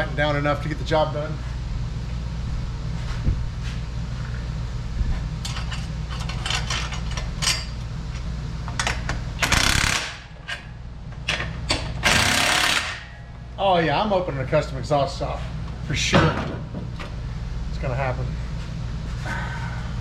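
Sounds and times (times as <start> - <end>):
hand ratchet clicking: 9.4 - 10.2, 12.0 - 13.0.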